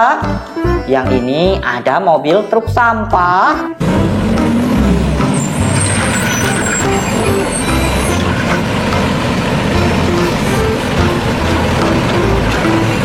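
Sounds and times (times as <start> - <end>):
background music with low beat: 2.6 - 13.0
truck engine running: 3.8 - 13.0.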